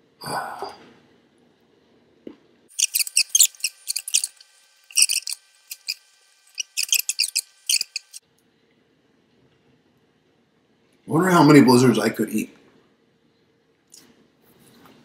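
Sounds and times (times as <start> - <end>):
plastic spoon scraping cup: 2.8 - 6.0, 6.6 - 8.2.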